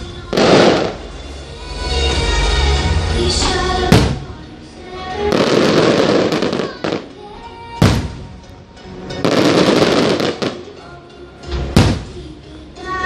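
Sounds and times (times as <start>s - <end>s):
firework crackling: 0.0s - 1.4s, 3.4s - 4.4s, 5.2s - 7.2s, 9.2s - 10.8s, 11.7s - 12.2s
loud firework bangs: 3.9s - 4.4s, 7.8s - 8.4s, 11.8s - 12.2s.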